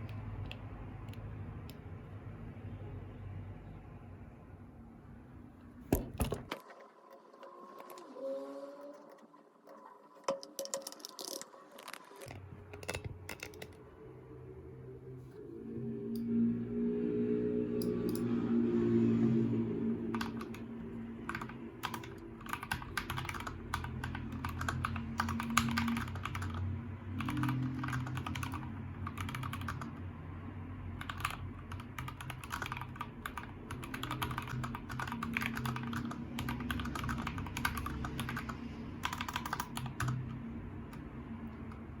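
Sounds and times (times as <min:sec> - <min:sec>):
mechanical keyboard key clacks: 0:12.8 - 0:13.8.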